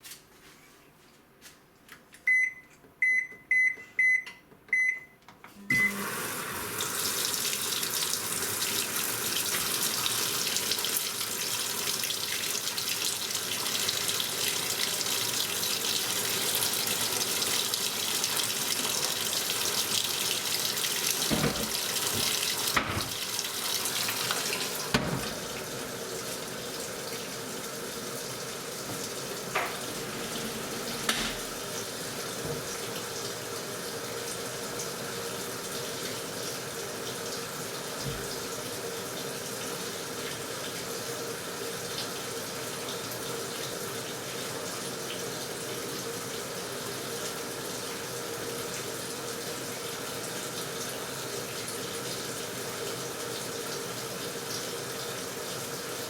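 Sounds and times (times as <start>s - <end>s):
washing machine beeping: 2.2s - 6.8s, 20.2s - 26.8s, 28.4s - 32.4s
water rushing into tub: 5.7s - 35.6s
soft knocks: 21.3s - 23.2s.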